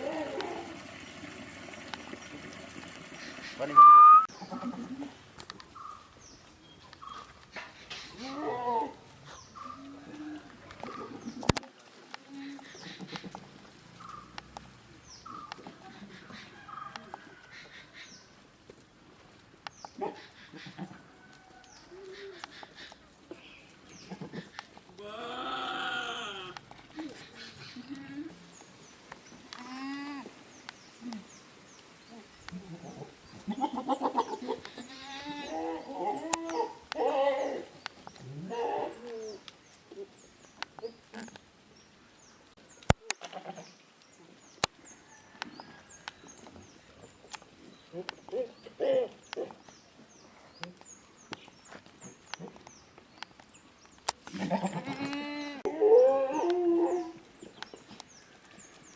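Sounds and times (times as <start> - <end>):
small birds chirping: 3.1 - 18.4, 19.6 - 55.7, 56.3 - 58.9
low animal call: 3.3 - 5.2
goats bleating: 24.0 - 26.7, 32.5 - 37.7, 54.3 - 55.8.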